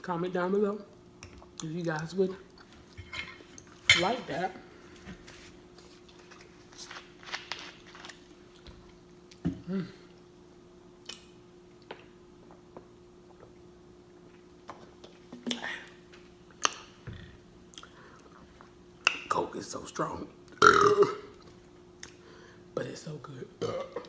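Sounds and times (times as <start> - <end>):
faint steady hum: 0.0 - 24.0
person chewing and smacking food: 5.7 - 10.2, 11.0 - 17.0
wet mouth clicks: 11.0 - 12.1.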